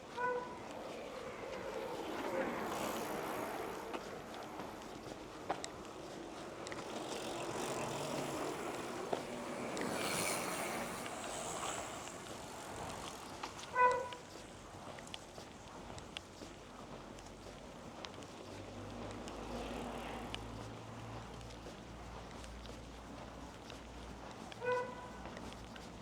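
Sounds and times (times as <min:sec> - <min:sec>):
village street ambience: 0:00.0 - 0:26.0
something passing by: 0:06.3 - 0:13.2.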